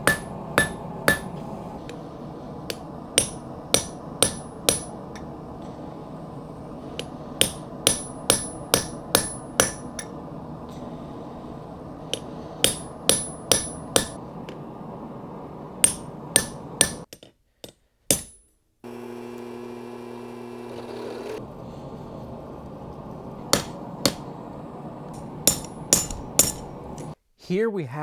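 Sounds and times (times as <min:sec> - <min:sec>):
hammer striking steel on anvil: 0:00.0 - 0:05.9, 0:07.0 - 0:11.0, 0:12.0 - 0:14.6, 0:15.8 - 0:17.1, 0:18.1 - 0:18.4, 0:22.4 - 0:27.2
low steady hum: 0:00.0 - 0:17.0, 0:21.4 - 0:27.2.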